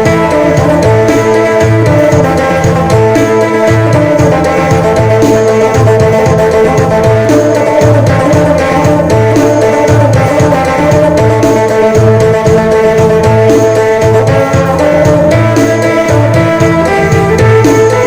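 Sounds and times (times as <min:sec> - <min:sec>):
drum beat: 0:00.0 - 0:18.0
lute melody over drone: 0:00.0 - 0:18.0
repeating bass line: 0:00.0 - 0:18.0.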